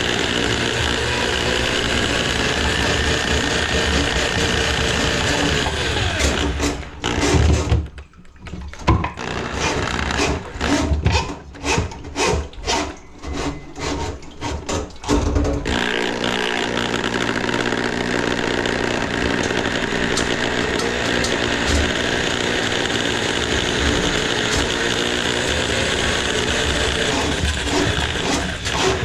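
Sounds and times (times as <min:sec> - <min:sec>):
motor-driven tool running: 0:00.0 - 0:07.4, 0:15.7 - 0:29.0
tool rasping strokes: 0:15.7 - 0:29.0.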